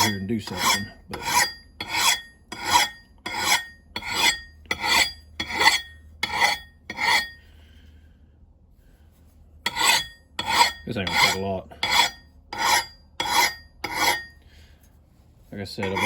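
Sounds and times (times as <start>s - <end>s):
file rasping on steel: 0.0s - 7.4s, 9.6s - 14.4s, 15.8s - 16.0s.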